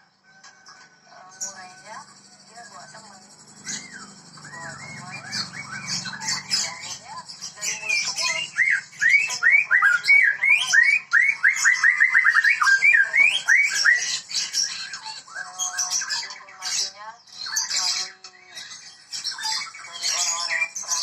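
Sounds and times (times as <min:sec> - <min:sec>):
songbird whistling song: 0:00.0 - 0:21.0.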